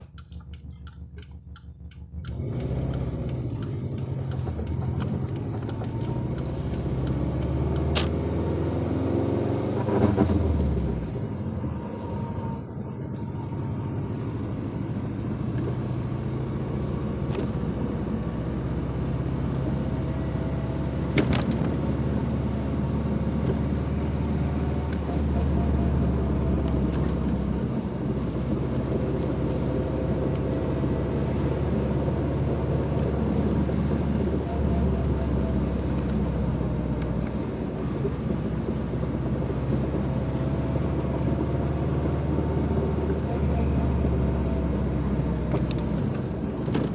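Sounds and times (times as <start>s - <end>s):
car engine and road noise: 0.0s - 46.9s.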